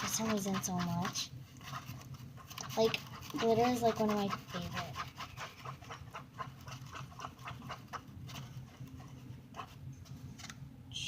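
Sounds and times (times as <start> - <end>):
slime being stirred in bowl: 0.0 - 10.1.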